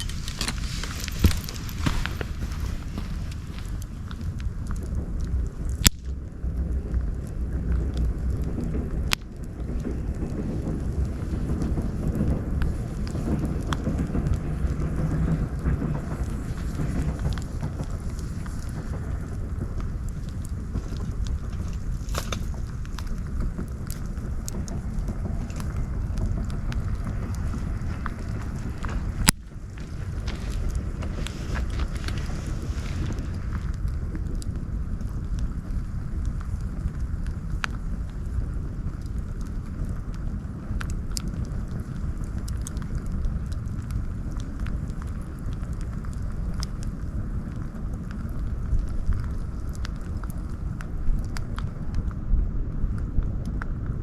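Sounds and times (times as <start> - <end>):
sharp pops from burning wood: 0.0 - 52.2
campfire low rumble: 0.0 - 54.0
small fire crackles: 0.0 - 54.0.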